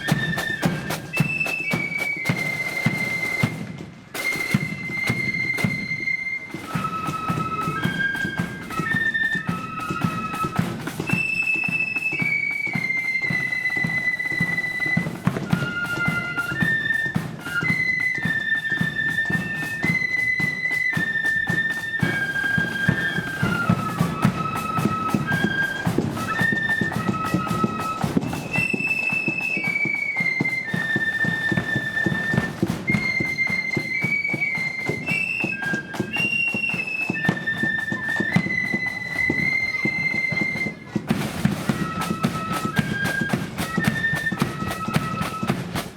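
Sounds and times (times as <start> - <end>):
drums beating march rhythm: 0.0 - 45.9
flutes playing in unison: 0.0 - 45.9.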